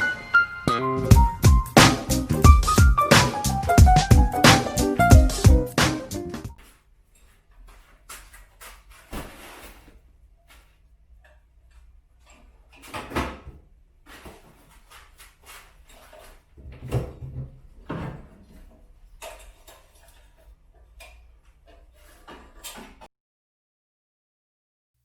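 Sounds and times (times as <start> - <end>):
loud bumps: 1.0 - 6.5
handling knocks and clicks: 4.0 - 23.1.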